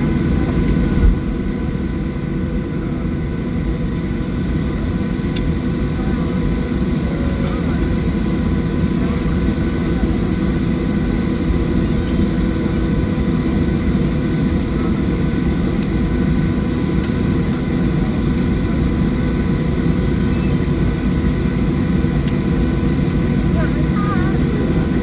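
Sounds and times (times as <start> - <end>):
aircraft cabin hum: 0.0 - 25.0.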